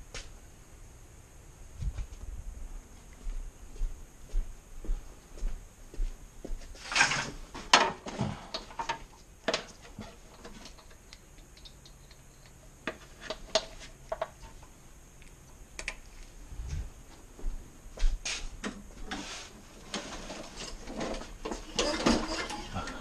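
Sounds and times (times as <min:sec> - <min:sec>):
metal tools clattering: 0:20.3 - 0:23.0.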